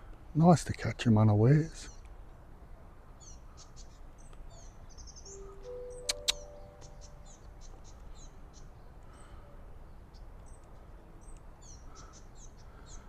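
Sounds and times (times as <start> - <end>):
small birds chirping: 1.6 - 2.2, 3.1 - 13.0
sharp clicks: 6.0 - 6.9.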